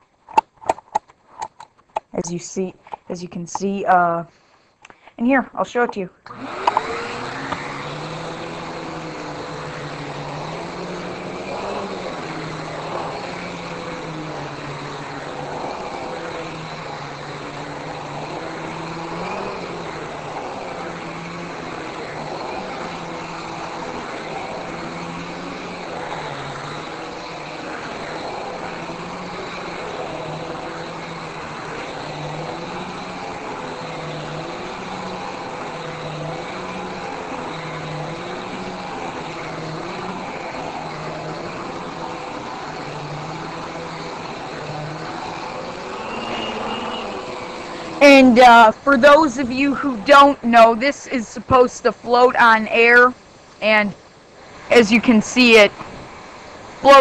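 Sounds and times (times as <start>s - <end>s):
vacuum cleaner running: 0.9s - 57.0s.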